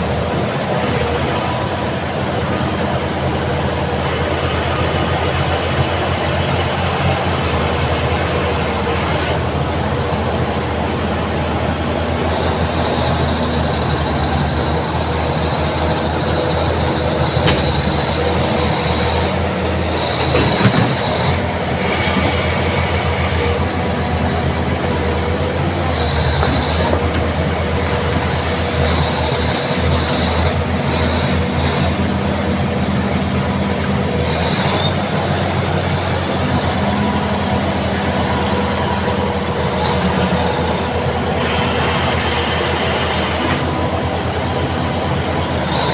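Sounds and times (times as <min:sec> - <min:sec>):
diesel engine running: 0:00.0 - 0:45.9
steel tracks clanking: 0:00.0 - 0:45.9
high squeals: 0:34.0 - 0:35.5.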